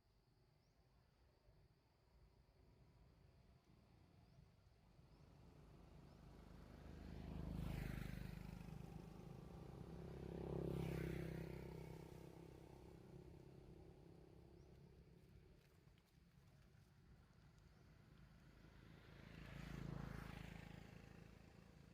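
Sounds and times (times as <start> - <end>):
motor vehicles passing: 6.3 - 14.7, 18.4 - 21.9.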